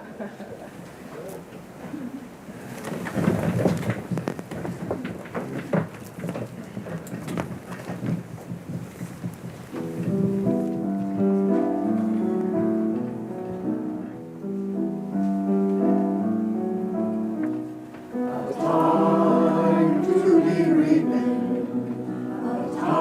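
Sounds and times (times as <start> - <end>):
choir singing: 18.1 - 23.0.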